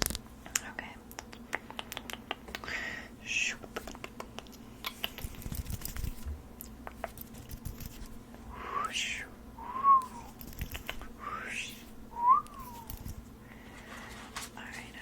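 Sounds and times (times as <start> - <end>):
swish of air from fan: 7.4 - 15.0
hand fan clicks and taps: 10.4 - 11.1
short high whistle-like tone: 12.2 - 13.0.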